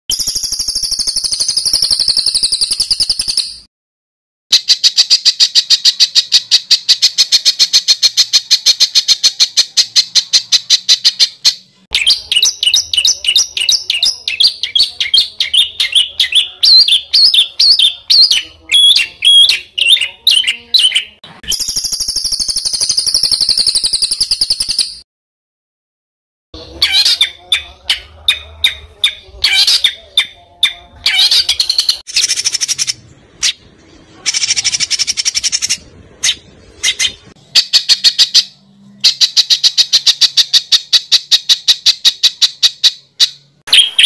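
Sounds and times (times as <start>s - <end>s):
rapidly repeated high bird notes: 0.1s - 3.6s
songbird song: 4.5s - 25.0s, 26.6s - 44.0s.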